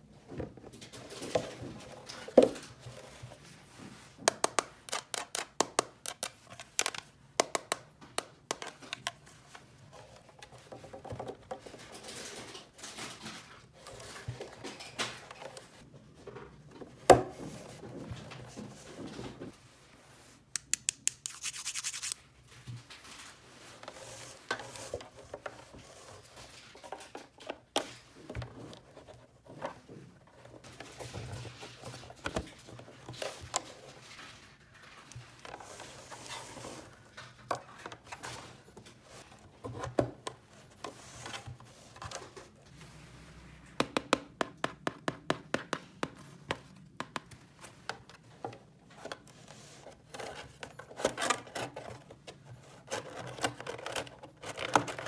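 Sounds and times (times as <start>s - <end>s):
sharp click: 20.6s - 22.1s
hissing rub: 21.0s - 22.2s
scratching and rubbing: 21.0s - 22.2s.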